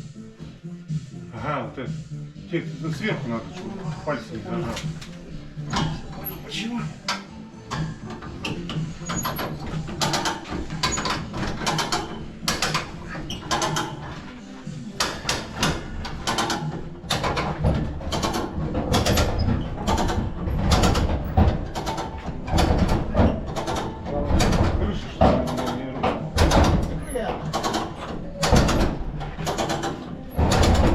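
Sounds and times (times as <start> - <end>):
hoist ratcheting clicks: 27.5 - 30.9.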